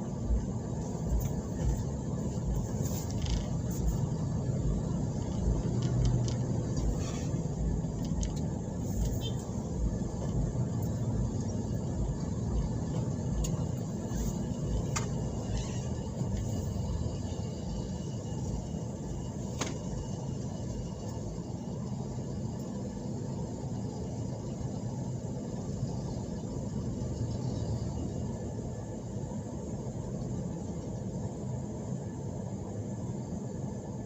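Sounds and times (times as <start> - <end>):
road traffic: 0.0 - 34.0
vehicle engine rumble: 0.0 - 34.0.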